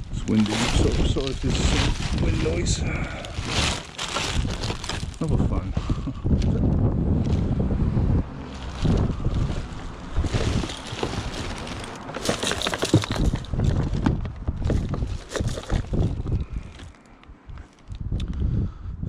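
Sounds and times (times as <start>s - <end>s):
wind buffeting microphone: 0.0s - 19.0s
scrap clicking and knocking: 8.6s - 18.0s.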